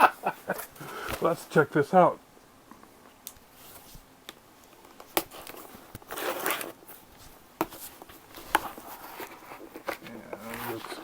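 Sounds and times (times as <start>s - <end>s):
cardboard tearing: 5.2s - 6.8s.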